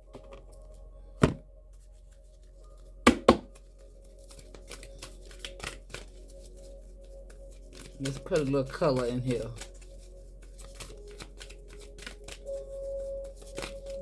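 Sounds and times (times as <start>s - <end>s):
faint background music: 0.0s - 14.0s
sharp knock on cards: 3.1s - 3.5s
cards being shuffled: 3.1s - 14.0s.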